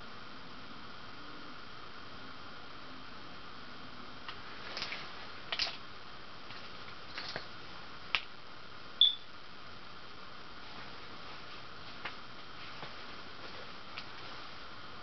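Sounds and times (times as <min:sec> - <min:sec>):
ceiling fan whirring: 0:00.0 - 0:15.0
short high beep: 0:09.0 - 0:09.3.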